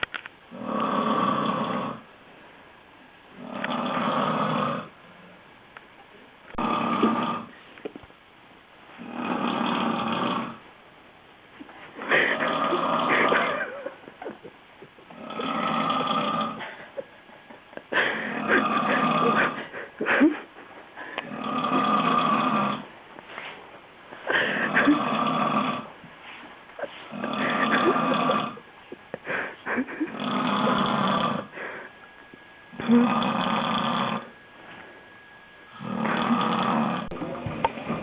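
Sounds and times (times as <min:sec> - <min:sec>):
loud snoring: 0:00.5 - 0:02.1, 0:03.4 - 0:05.0, 0:06.5 - 0:07.5, 0:09.0 - 0:10.6, 0:12.1 - 0:13.8, 0:15.1 - 0:16.7, 0:18.0 - 0:19.7, 0:21.2 - 0:22.9, 0:24.3 - 0:25.9, 0:27.1 - 0:28.6, 0:30.0 - 0:31.6, 0:32.7 - 0:34.3, 0:35.7 - 0:38.0
quiet breathing: 0:31.4 - 0:33.1.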